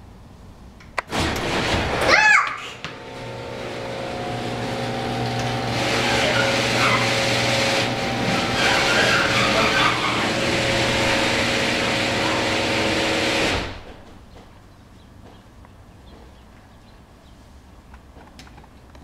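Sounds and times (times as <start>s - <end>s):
garage door motor humming: 0.8s - 14.5s.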